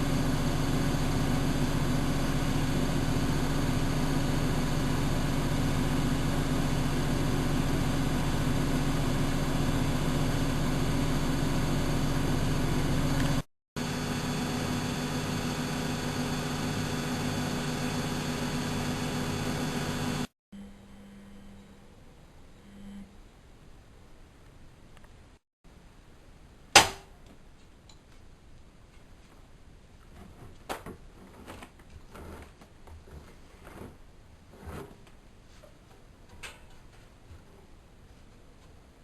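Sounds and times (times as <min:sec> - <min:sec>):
washing machine motor hum: 0:00.0 - 0:20.3.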